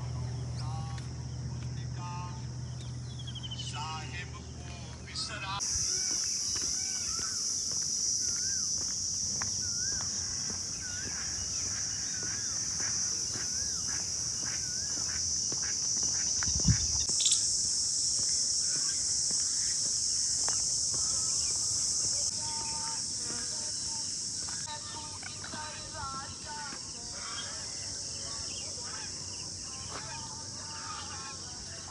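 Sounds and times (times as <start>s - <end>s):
insects droning: 0.0s - 31.9s
bird warbling call: 5.6s - 17.6s.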